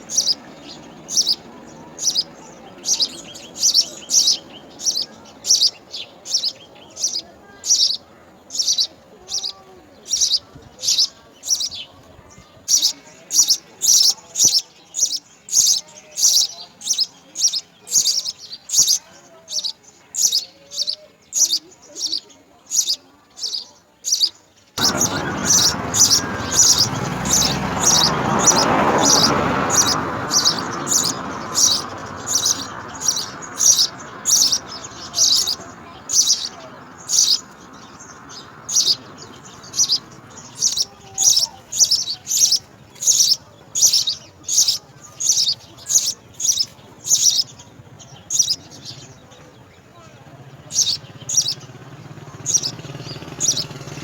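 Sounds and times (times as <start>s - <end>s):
sparrow chirping: 0.0s - 54.0s
rushing noise: 24.8s - 43.2s.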